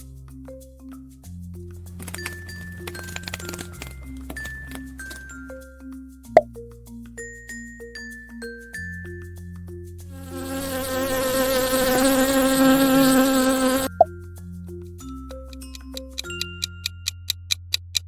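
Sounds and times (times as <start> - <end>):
soft background music: 0.0 - 17.8
insect buzzing: 10.1 - 14.1.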